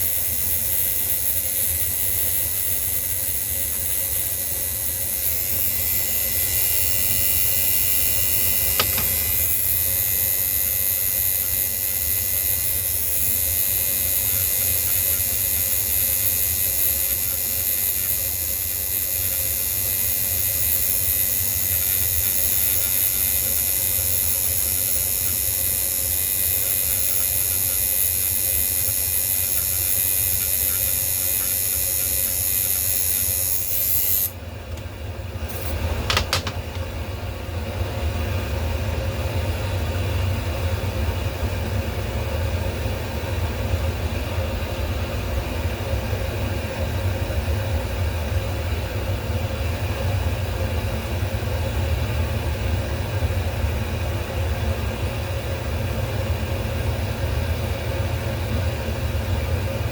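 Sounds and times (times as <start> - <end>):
small motor humming and hissing: 0.0 - 59.9
sharp click: 8.6 - 9.3, 35.5 - 36.8.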